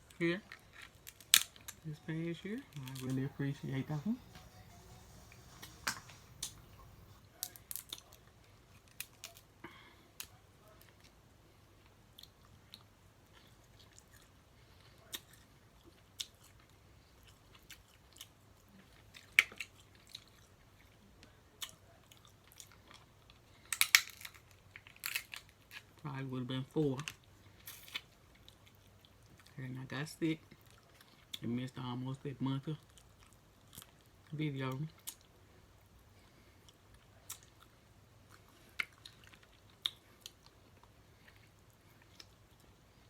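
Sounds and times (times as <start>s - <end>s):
crab shell cracking: 0.6s - 1.8s, 7.4s - 8.2s, 23.6s - 25.9s
chewing: 7.4s - 26.0s, 30.5s - 31.5s, 32.8s - 35.4s, 36.2s - 43.0s.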